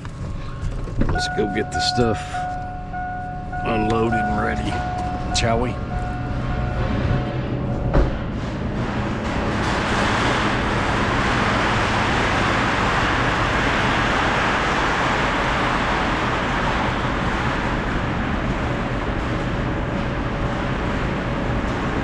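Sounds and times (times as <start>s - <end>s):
low hum: 0.0s - 13.6s
loud mechanical noise: 0.0s - 22.0s.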